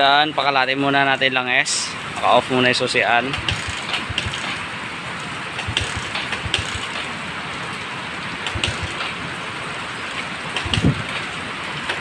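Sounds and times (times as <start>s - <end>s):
rain hissing: 1.2s - 12.0s
low thumps: 3.4s - 4.6s, 5.6s - 7.2s, 8.5s - 9.2s, 10.6s - 11.1s.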